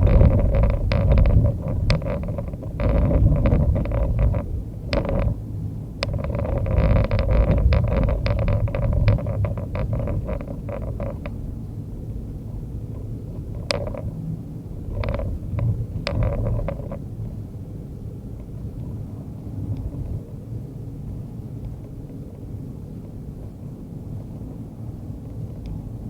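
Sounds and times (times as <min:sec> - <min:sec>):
engine and road rumble: 0:00.0 - 0:26.0.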